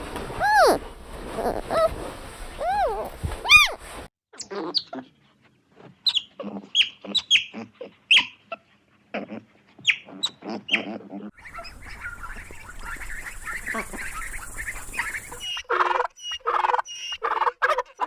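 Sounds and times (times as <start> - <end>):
chorus of chirping: 9.9 - 17.2.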